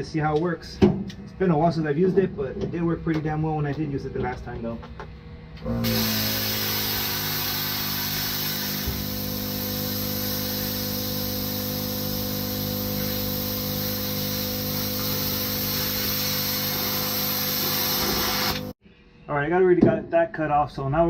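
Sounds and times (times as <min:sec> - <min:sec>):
air compressor humming: 0:00.7 - 0:18.8
plasma cutter hissing: 0:05.8 - 0:18.8.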